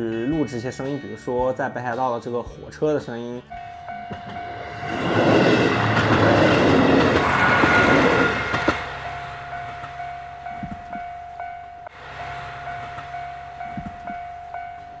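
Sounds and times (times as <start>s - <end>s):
low hum: 3.5s - 15.0s
steady high tone: 3.5s - 15.0s
train passing rumbling: 3.5s - 15.0s.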